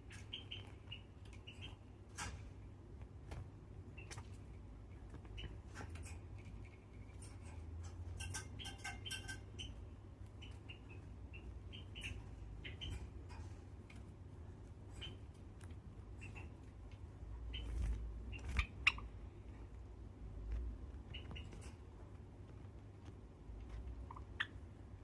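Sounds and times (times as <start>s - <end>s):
sparrows chip calls: 0.0s - 2.4s, 3.9s - 13.6s, 14.7s - 15.5s, 16.1s - 19.6s, 21.0s - 21.8s, 23.9s - 24.8s.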